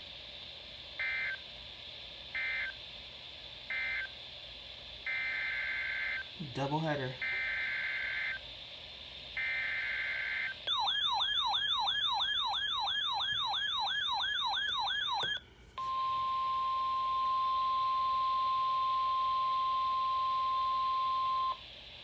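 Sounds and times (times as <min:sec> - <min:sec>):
steady warning alarm tone: 0:01.0 - 0:01.4, 0:02.3 - 0:02.8, 0:03.7 - 0:04.2, 0:05.0 - 0:08.5, 0:09.3 - 0:21.6
warbling electronic alert siren: 0:02.4 - 0:02.8, 0:03.7 - 0:04.1, 0:05.1 - 0:06.3, 0:07.2 - 0:08.4, 0:09.4 - 0:15.4.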